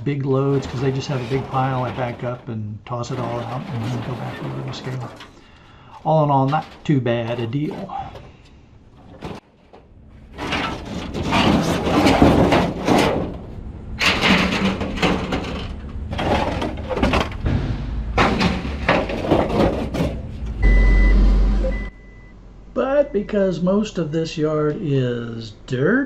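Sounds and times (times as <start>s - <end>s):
scrap metal clattering onto pile: 0.3s - 2.5s, 3.1s - 8.4s, 9.0s - 17.6s, 18.2s - 20.4s.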